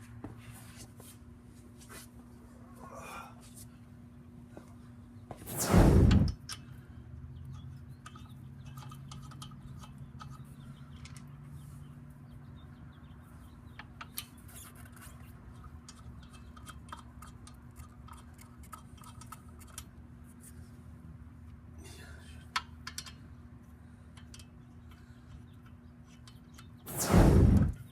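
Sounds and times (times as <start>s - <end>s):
steady low hum: 2.4s - 7.1s, 26.9s - 27.9s.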